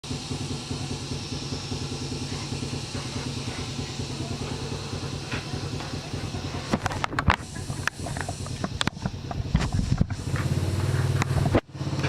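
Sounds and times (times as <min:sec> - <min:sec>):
engine running: 0:00.0 - 0:12.0.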